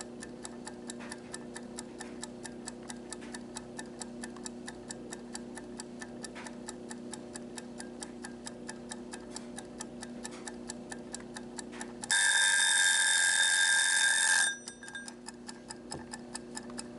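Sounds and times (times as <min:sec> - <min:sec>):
kitchen timer ticking: 0:00.0 - 0:16.9
timer bell ringing: 0:12.1 - 0:15.2.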